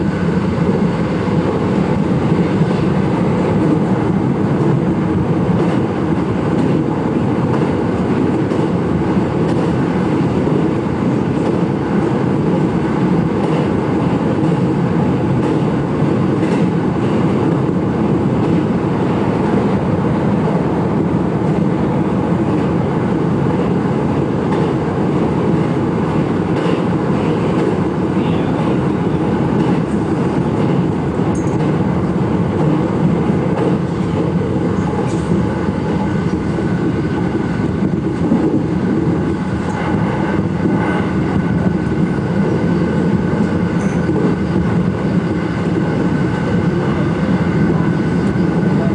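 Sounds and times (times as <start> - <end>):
train rumble: 0.0 - 48.9
faint rail clicks: 31.3 - 31.8.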